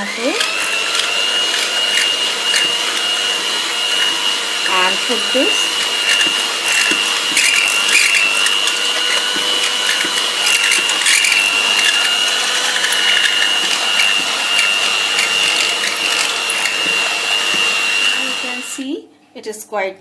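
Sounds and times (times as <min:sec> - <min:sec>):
electric hand mixer whining: 0:00.0 - 0:19.0.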